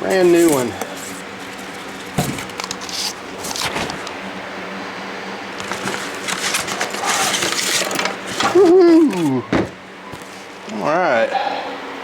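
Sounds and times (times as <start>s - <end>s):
packaging scrapes and rustles: 0.0s - 4.1s, 5.6s - 9.3s
steady low hum: 0.0s - 12.0s.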